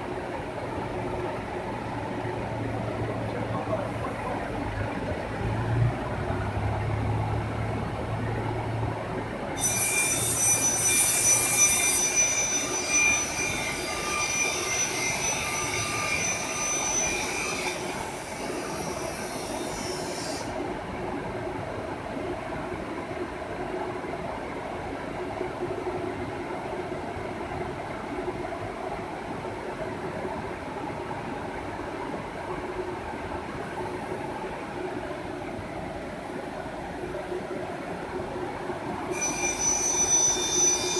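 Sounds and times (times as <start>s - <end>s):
high-pitched screech: 39.1s - 40.9s.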